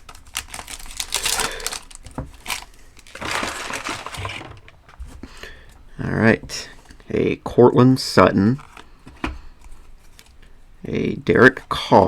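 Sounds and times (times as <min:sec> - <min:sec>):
foil wrapper tearing and crinkling: 0:00.0 - 0:04.6.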